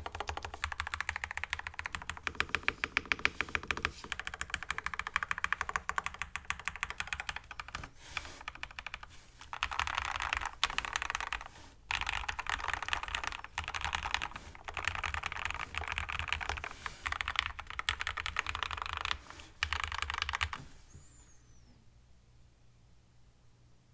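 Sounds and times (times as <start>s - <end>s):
mechanical keyboard typing: 0.0s - 20.6s.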